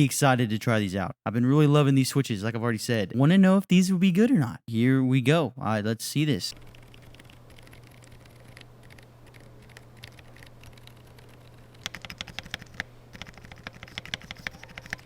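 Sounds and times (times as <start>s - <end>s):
mechanical keyboard typing: 6.5s - 15.0s.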